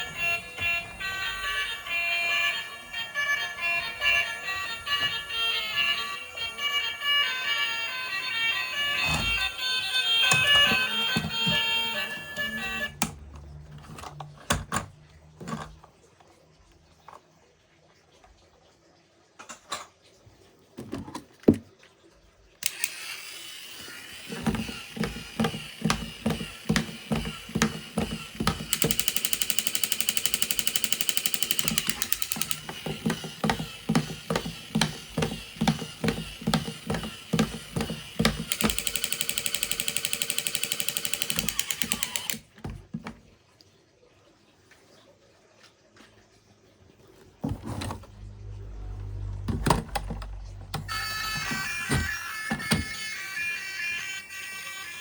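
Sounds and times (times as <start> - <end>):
toys and packaging handled: 0.0 - 13.0, 22.6 - 43.2
toy vehicle mechanical noise: 0.0 - 16.0, 22.6 - 42.6, 47.6 - 55.0.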